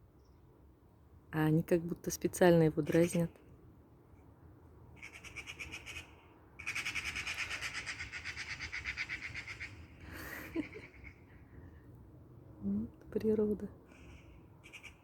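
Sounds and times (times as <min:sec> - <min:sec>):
crows rattling alarm chatter: 0:05.0 - 0:09.9, 0:13.9 - 0:15.0.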